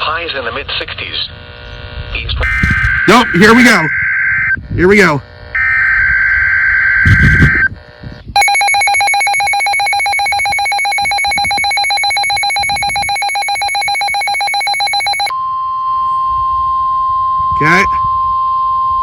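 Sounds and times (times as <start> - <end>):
buzzy data burst: 1.3 - 3.8, 7.0 - 15.3
rapidly pulsing electronic beep: 2.4 - 4.6, 5.6 - 7.7, 8.4 - 15.3.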